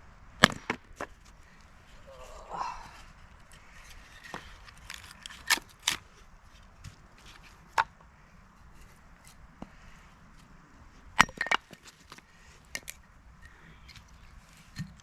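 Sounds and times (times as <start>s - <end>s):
blade chopping wood: 0.4s - 1.1s.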